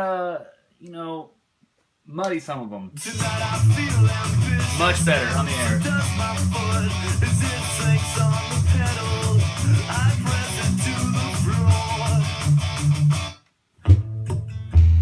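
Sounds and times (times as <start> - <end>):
guitar-led music through speakers: 3.0 - 15.0.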